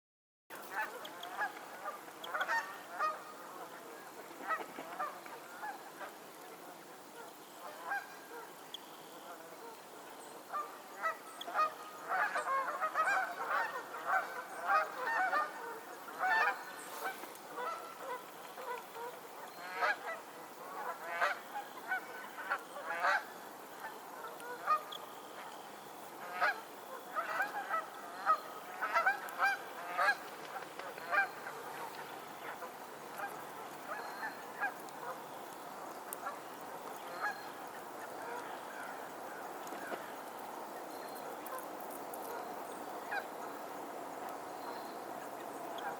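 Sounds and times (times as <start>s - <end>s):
geese honking: 0.7s - 6.2s, 7.2s - 8.5s, 10.5s - 25.6s, 26.2s - 35.3s.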